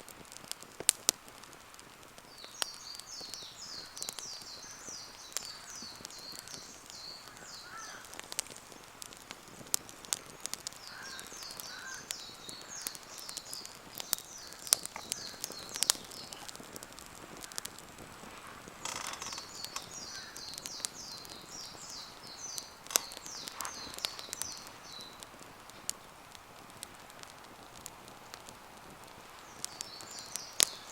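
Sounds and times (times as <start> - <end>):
campfire crackling and popping: 0.0 - 30.9
songbird twittering: 2.3 - 16.6, 18.9 - 25.2, 29.4 - 30.9.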